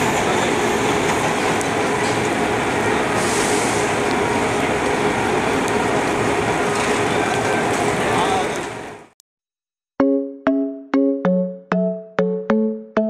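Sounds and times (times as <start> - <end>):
train wheels rumbling on rail: 0.0 - 9.1
brief high hiss: 3.2 - 3.9.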